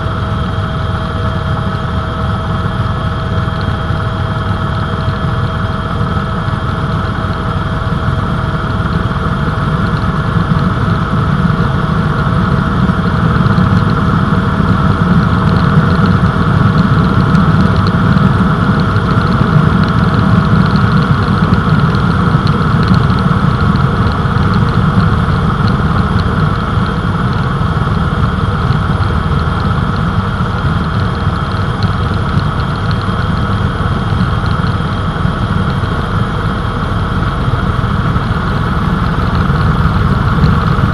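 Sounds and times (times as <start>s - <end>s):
helicopter engine and rotor drone: 0.0s - 40.9s
thin whine: 0.0s - 40.9s.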